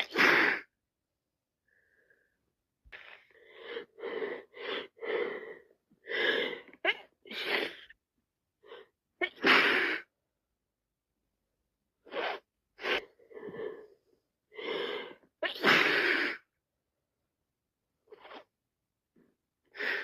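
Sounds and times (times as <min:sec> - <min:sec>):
person sneezing: 0:00.0 - 0:00.7, 0:06.9 - 0:07.9, 0:09.2 - 0:10.1, 0:15.4 - 0:16.5
gasping in-breaths: 0:03.0 - 0:06.8.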